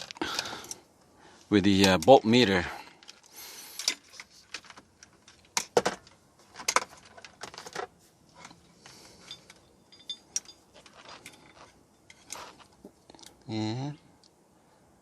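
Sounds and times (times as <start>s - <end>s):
small hard parts clicking: 0.0s - 0.9s, 2.8s - 13.4s.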